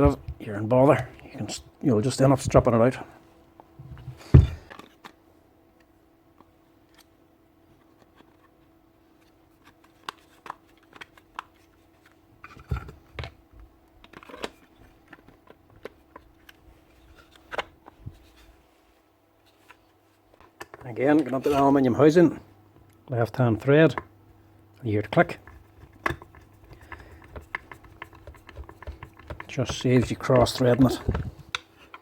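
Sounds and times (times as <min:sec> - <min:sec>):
faint steady hum: 0:00.0 - 0:32.0
clicks and taps handling parts: 0:25.4 - 0:32.0.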